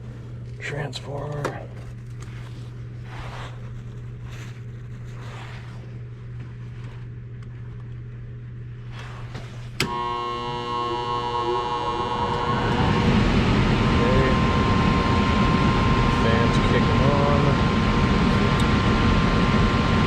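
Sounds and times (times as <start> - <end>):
low hum: 0.0 - 20.0
blower motor whining: 8.9 - 20.0.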